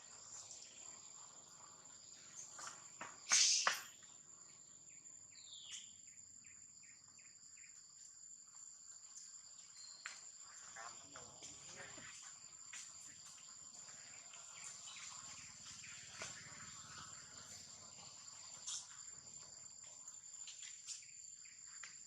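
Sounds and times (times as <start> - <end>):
insects shrilling: 0.0 - 4.2, 13.1 - 21.8.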